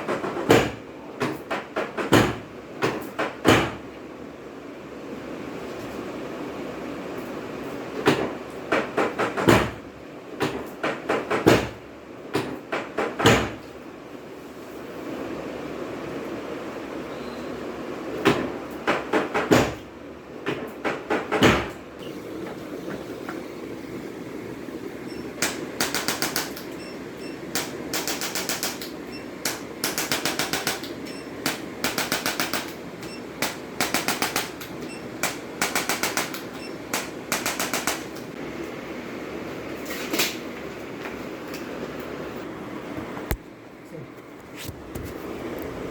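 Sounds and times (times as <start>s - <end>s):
fan-like hum: 0.0s - 45.9s
loud knocks: 20.4s - 21.8s
rapid mechanical clicking: 25.4s - 26.9s, 27.5s - 38.4s.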